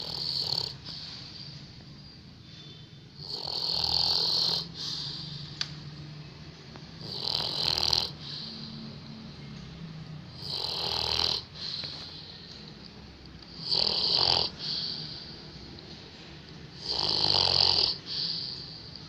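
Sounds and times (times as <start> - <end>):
person snoring: 0.0 - 0.8, 3.2 - 5.5, 7.0 - 8.8, 10.3 - 12.3, 13.5 - 15.5, 16.8 - 19.0.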